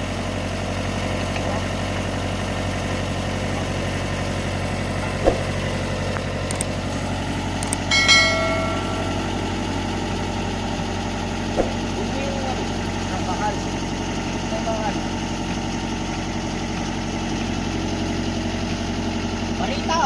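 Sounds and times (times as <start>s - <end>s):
diesel engine idling: 0.0s - 20.0s
steel part clanking: 7.6s - 10.4s.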